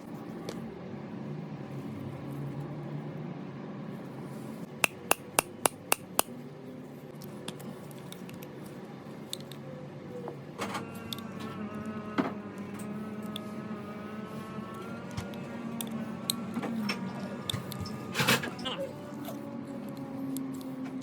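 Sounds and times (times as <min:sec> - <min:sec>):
hammer tapping on metal: 0:04.8 - 0:06.3.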